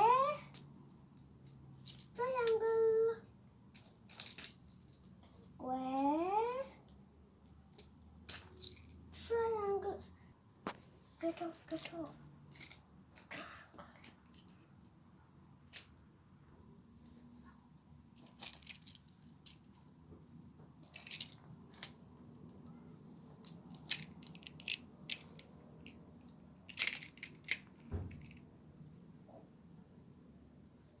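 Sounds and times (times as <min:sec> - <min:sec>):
plastic tiles clicking together: 0:23.4 - 0:26.0.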